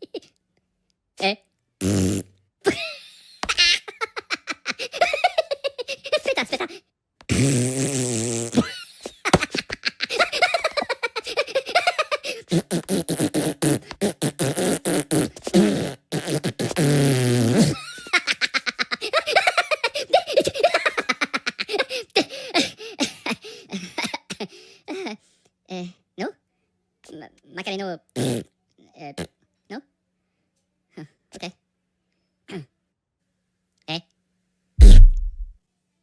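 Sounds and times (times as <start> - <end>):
fart sound effects: 1.8 - 2.3, 7.3 - 8.7, 12.5 - 17.8, 34.8 - 35.5
cartoon voices babbling and giggling: 3.6 - 6.8, 9.4 - 12.5.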